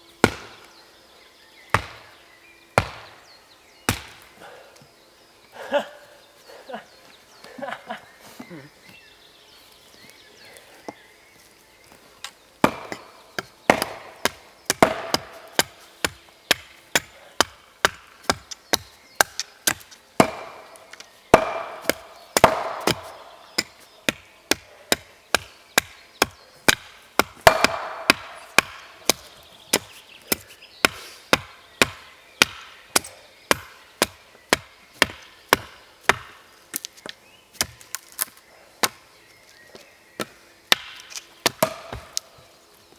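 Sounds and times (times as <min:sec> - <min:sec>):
axe chopping wood: 0:00.2 - 0:00.7, 0:01.7 - 0:02.2, 0:02.8 - 0:03.3, 0:03.9 - 0:04.4, 0:12.6 - 0:36.9, 0:37.6 - 0:39.0, 0:40.2 - 0:42.4.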